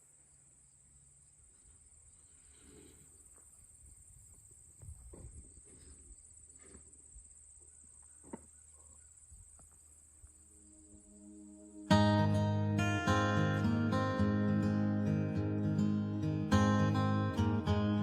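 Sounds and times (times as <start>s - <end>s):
faint high-pitched hiss: 0.0s - 14.1s.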